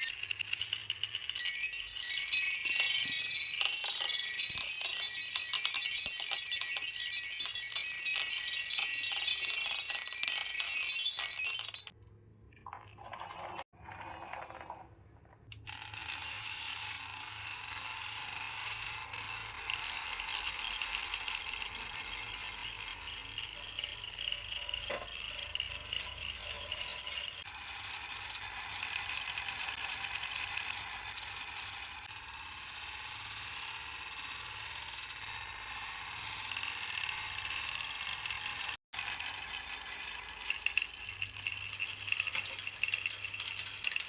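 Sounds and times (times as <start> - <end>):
marbles rattling down wooden run: 0.0 - 11.9, 36.2 - 44.0.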